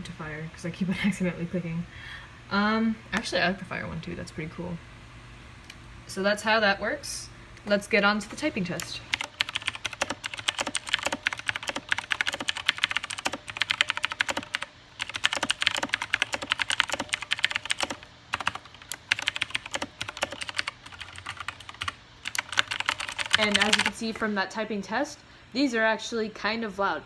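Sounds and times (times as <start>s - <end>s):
mechanical keyboard typing: 8.3s - 24.0s.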